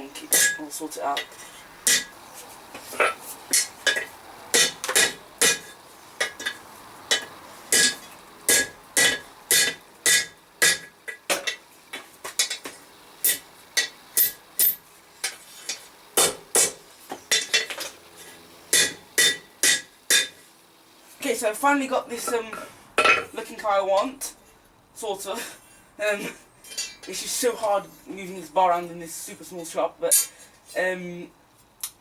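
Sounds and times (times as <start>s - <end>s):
hammer striking steel on anvil: 0.3s - 0.7s, 1.9s - 2.1s, 3.5s - 11.6s, 18.7s - 20.4s, 26.7s - 27.1s.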